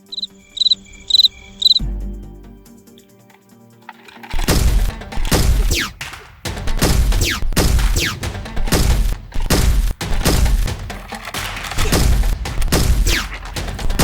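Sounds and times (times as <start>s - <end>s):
falling whistles: 0.0s - 1.8s
automatic gunfire: 4.3s - 14.0s.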